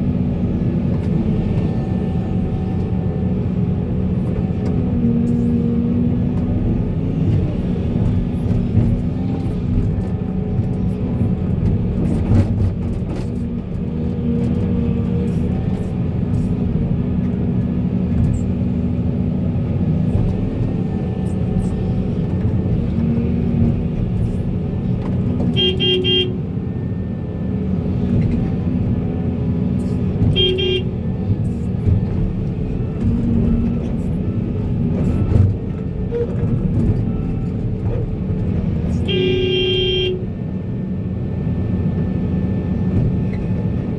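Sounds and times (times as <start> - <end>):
heavy diesel machinery running: 0.0 - 43.9
vehicle horn tooting: 25.5 - 26.4, 30.3 - 30.9, 39.0 - 40.3.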